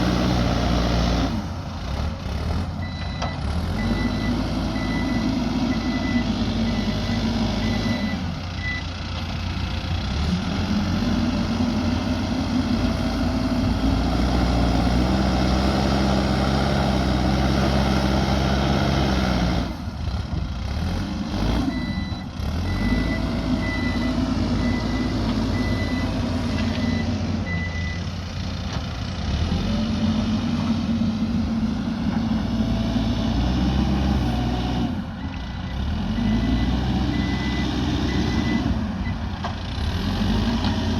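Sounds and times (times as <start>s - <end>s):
diesel engine working under load: 0.0s - 40.9s
reversing alarm beeping: 2.8s - 8.8s, 21.7s - 28.1s, 35.2s - 39.2s.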